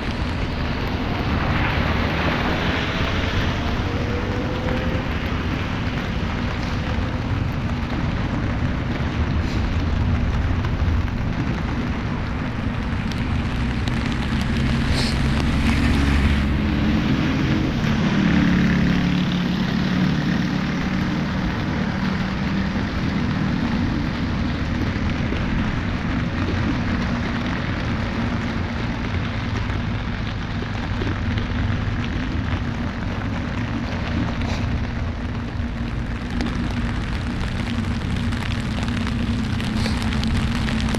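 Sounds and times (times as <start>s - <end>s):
vehicle passing close: 0.0s - 28.6s
low engine hum: 0.0s - 40.9s
steady rain: 0.0s - 40.9s
tyres hissing on wet road: 0.0s - 40.9s.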